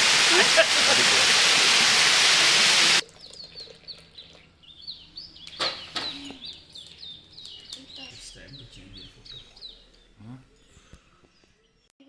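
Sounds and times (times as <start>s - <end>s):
waterfall rushing: 0.0s - 3.0s
birds chirping: 0.0s - 11.9s.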